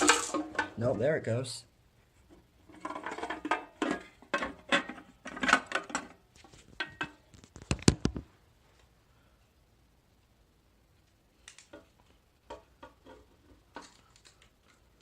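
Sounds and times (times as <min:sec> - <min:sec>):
metal and plastic parts clattering: 0:00.0 - 0:00.9, 0:02.6 - 0:08.2, 0:12.5 - 0:15.0.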